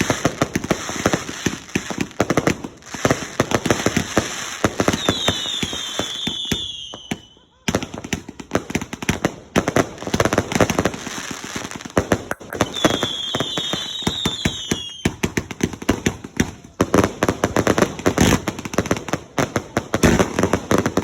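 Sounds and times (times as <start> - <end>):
fireworks bangs and crackling: 0.0 - 21.0
firework whistles: 3.8 - 7.4, 12.4 - 15.4.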